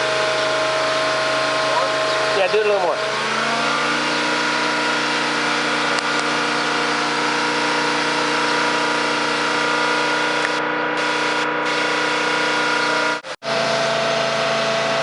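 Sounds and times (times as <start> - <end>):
car engine running steadily: 0.0 - 15.0.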